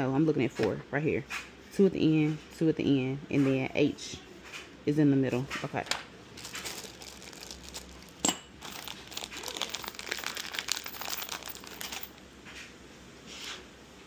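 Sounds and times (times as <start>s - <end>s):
packaging crinkling: 6.3s - 12.2s.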